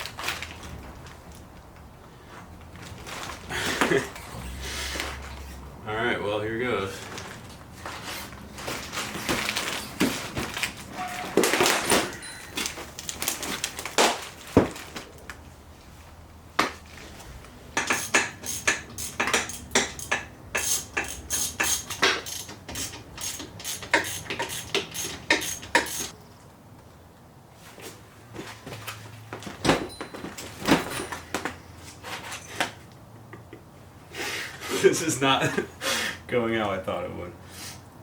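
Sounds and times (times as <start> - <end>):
metal clanks of hand tools: 17.8 - 26.1.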